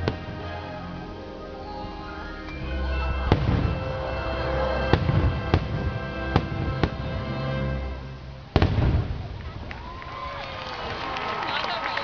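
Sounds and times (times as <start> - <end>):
fireworks bursting: 0.0 - 0.8, 2.5 - 12.0
music with held notes: 0.0 - 8.9.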